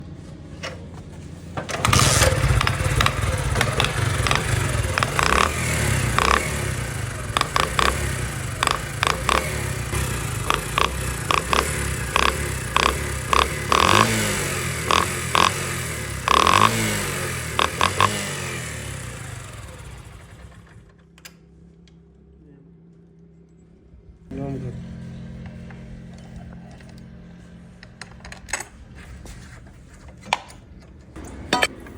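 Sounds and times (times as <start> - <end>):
motorcycle engine starting and revving: 0.7 - 21.2, 24.3 - 29.5, 31.2 - 31.9
sharp irregular clicks: 1.8 - 14.2, 14.8 - 15.6, 16.3 - 16.9, 17.5 - 18.2.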